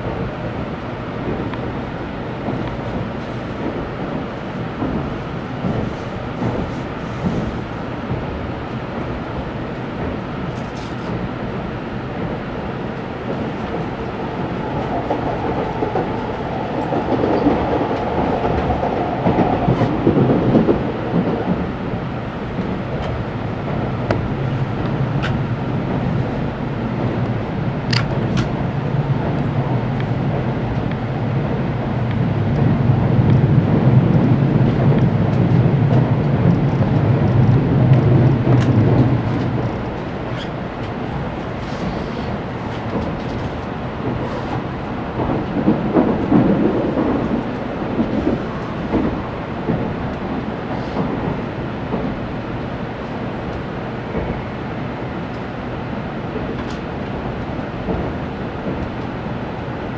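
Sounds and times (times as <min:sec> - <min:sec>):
train running rumble and rush: 0:00.0 - 0:59.9.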